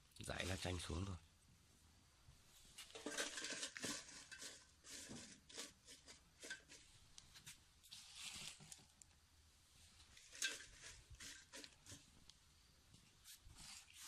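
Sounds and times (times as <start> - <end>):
leaves rustling in a pot: 0.0 - 1.2, 2.6 - 9.0, 9.8 - 12.3, 13.2 - 14.0
pot clicking and clinking: 2.9 - 4.8.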